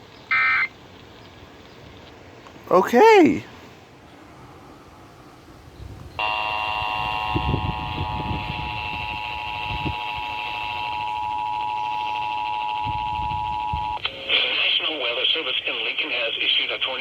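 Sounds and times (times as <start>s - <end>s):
two-tone alarm: 0.3s - 0.7s, 6.2s - 14.3s.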